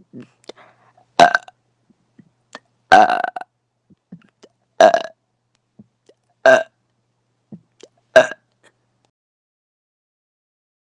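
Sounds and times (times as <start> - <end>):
woman burping: 1.2 - 1.5, 2.9 - 3.4, 4.8 - 5.1, 8.2 - 8.4.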